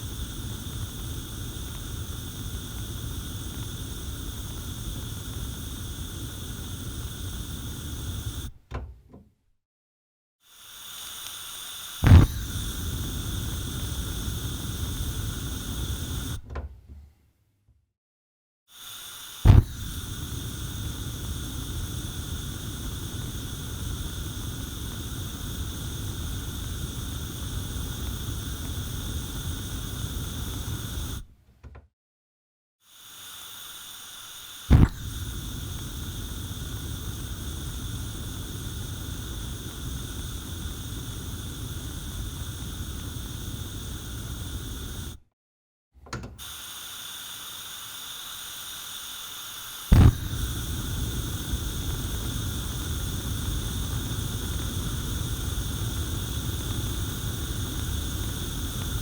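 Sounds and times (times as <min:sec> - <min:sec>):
gas burner flame rushing: 0:00.0 - 0:08.6, 0:11.1 - 0:16.4, 0:19.0 - 0:31.3, 0:33.3 - 0:45.2, 0:46.4 - 0:59.0
gas hissing: 0:00.0 - 0:08.6, 0:10.6 - 0:16.4, 0:18.7 - 0:31.3, 0:32.9 - 0:45.2, 0:46.4 - 0:59.0.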